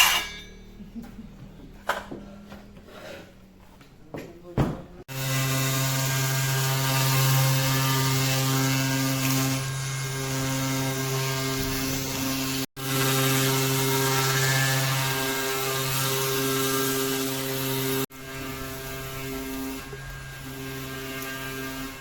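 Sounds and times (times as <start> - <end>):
electric power tool motor running: 5.1 - 22.0.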